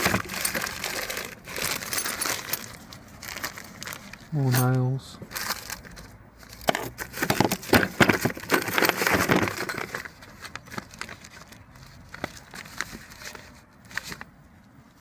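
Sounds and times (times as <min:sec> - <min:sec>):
loose nails rattling and clinking: 0:00.0 - 0:02.8, 0:06.7 - 0:10.1.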